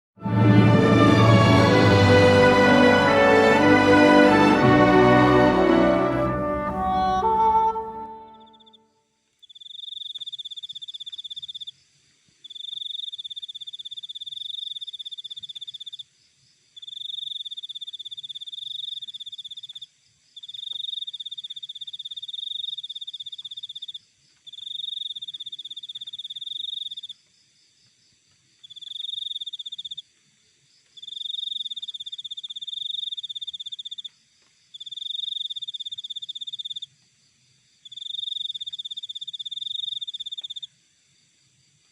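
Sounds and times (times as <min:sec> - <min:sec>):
cricket trilling: 0:09.4 - 0:41.9.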